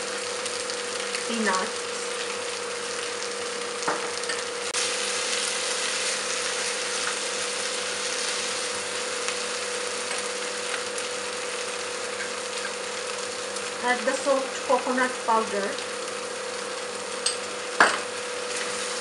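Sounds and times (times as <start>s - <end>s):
meat sizzling in oil: 0.0s - 19.0s.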